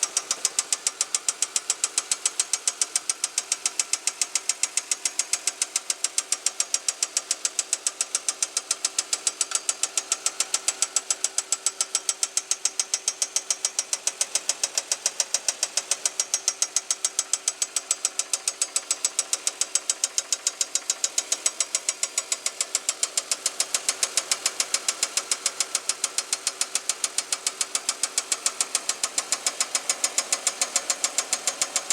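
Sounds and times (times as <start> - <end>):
car engine running: 0.0 - 31.9.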